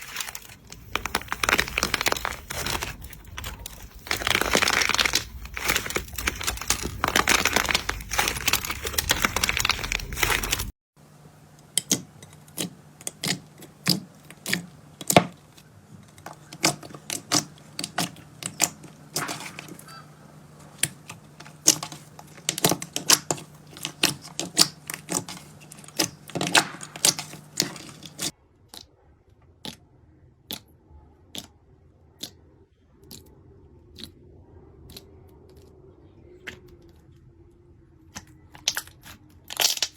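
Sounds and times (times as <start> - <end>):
slime crackling and popping: 0.0 - 10.7, 20.8 - 28.8, 38.1 - 39.9.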